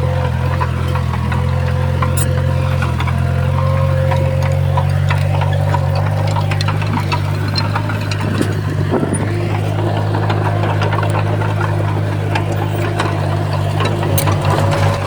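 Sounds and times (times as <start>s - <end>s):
bulldozer diesel engine running: 0.0s - 15.0s
short clanks and knocks: 0.5s - 15.0s.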